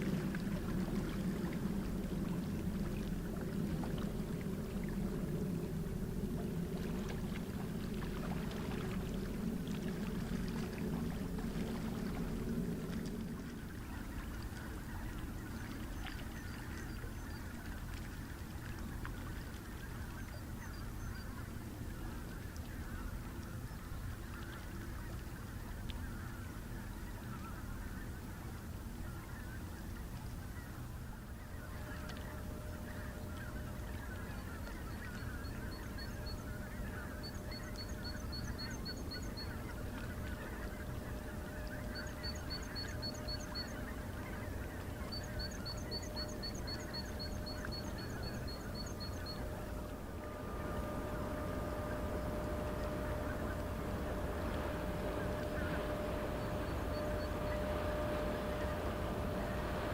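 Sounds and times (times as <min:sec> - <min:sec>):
low rumble: 0:00.0 - 0:26.1, 0:31.4 - 0:59.9
steady hum: 0:00.0 - 0:59.9
geese honking: 0:12.7 - 0:59.9.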